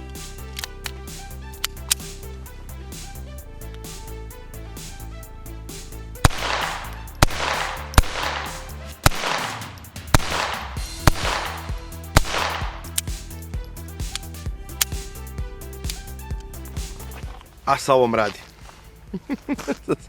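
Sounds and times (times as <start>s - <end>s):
background music: 0.0s - 20.0s
pistol shots with echo: 6.2s - 12.9s.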